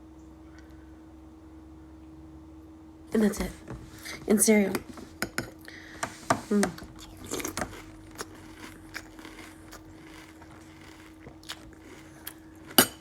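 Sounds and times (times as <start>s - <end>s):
chewing crunchy cereal: 6.4s - 13.0s.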